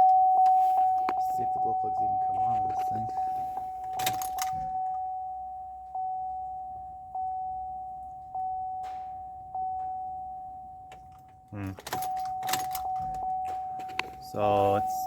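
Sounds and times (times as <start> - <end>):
dashboard warning chime: 0.0 - 15.0.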